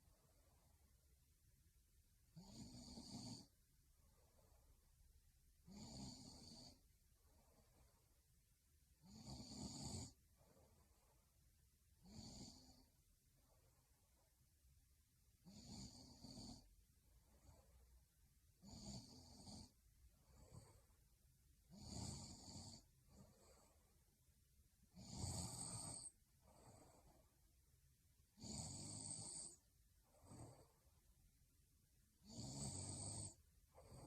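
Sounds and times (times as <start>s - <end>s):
woman snoring: 2.3s - 3.5s, 5.6s - 6.8s, 9.0s - 10.7s, 12.0s - 12.9s, 15.4s - 16.7s, 18.6s - 20.9s, 21.7s - 23.8s, 24.9s - 27.3s, 28.4s - 30.8s, 32.2s - 34.0s
faint breaths: 2.6s - 5.0s, 5.9s - 8.4s, 10.1s - 11.6s, 21.9s - 24.2s, 25.2s - 27.6s.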